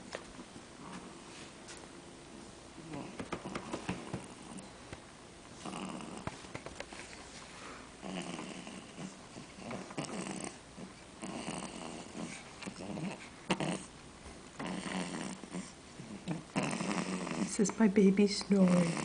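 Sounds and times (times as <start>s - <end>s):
snoring: 5.6s - 6.2s, 8.0s - 13.9s, 14.6s - 17.6s, 18.6s - 19.0s.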